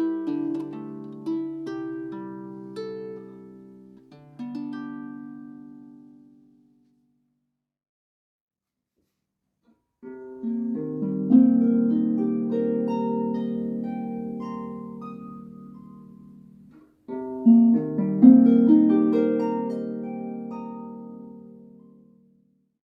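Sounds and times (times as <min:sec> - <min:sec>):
harp plucked notes: 0:00.0 - 0:07.0, 0:10.0 - 0:22.4.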